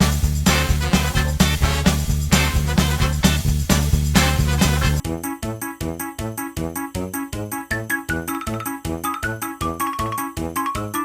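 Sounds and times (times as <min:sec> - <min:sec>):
swing music with heavy bass: 0:00.0 - 0:05.2
bouncy tune with clipped notes: 0:00.0 - 0:11.0.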